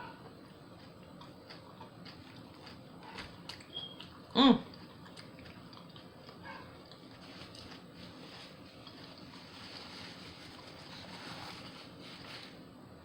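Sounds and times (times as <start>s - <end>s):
person chewing: 0.1s - 11.6s
dog bark: 6.4s - 6.7s.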